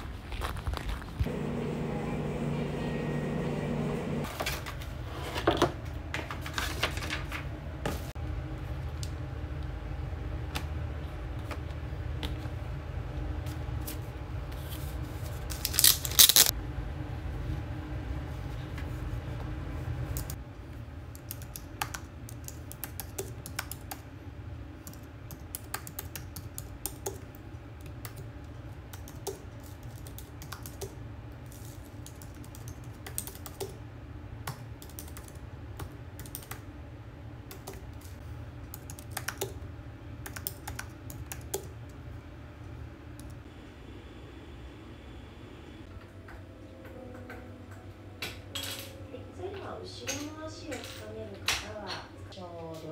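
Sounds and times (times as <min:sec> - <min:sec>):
computer keyboard typing: 0:21.2 - 0:24.1, 0:24.8 - 0:28.3, 0:28.9 - 0:31.0, 0:32.0 - 0:33.8, 0:34.5 - 0:36.6, 0:37.5 - 0:38.1, 0:38.7 - 0:39.6, 0:40.2 - 0:41.8.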